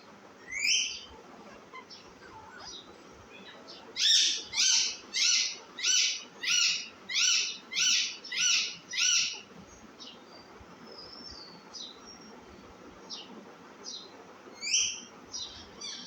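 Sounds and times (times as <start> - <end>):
faint bird chirps: 0.4 - 16.0
parrot calling harshly: 4.0 - 9.4.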